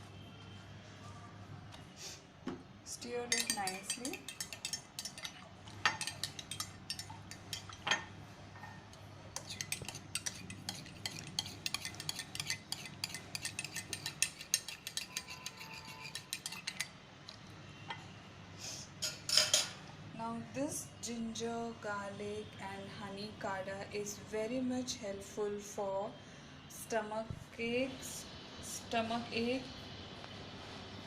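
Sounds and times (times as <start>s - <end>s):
spoon clinking against vessel: 3.2s - 8.1s, 9.4s - 16.9s.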